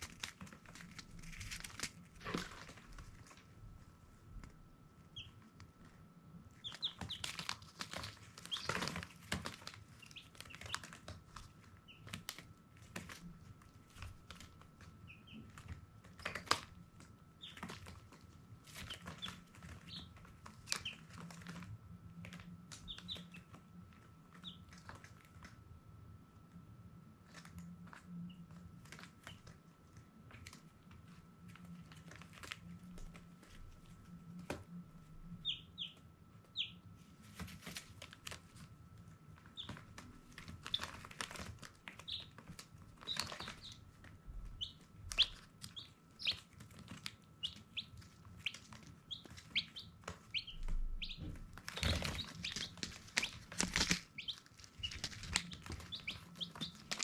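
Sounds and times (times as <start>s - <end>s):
rustling: 0.0s - 4.6s, 37.0s - 57.0s
baby chicks peeping: 0.0s - 25.6s, 26.4s - 57.0s.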